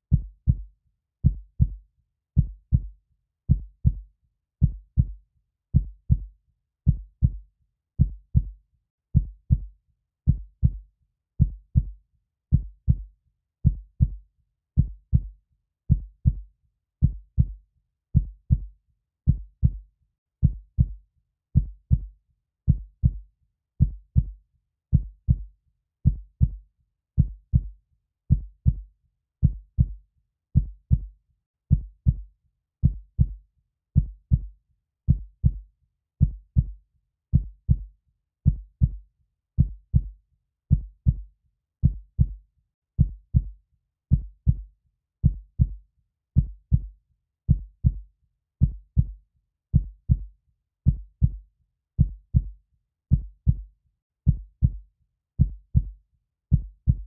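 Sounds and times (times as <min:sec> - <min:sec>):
heartbeat thumps: 0:32.8 - 0:33.4, 0:34.0 - 0:34.5, 0:35.1 - 0:35.6, 0:39.6 - 0:40.1, 0:40.7 - 0:41.2, 0:41.8 - 0:42.4, 0:44.1 - 0:44.6, 0:45.2 - 0:45.8, 0:46.4 - 0:46.9, 0:47.5 - 0:48.0, 0:48.6 - 0:49.1, 0:49.8 - 0:50.3, 0:50.9 - 0:51.4, 0:52.0 - 0:52.5, 0:53.1 - 0:53.6, 0:54.3 - 0:54.8, 0:55.4 - 0:55.9, 0:56.5 - 0:57.0.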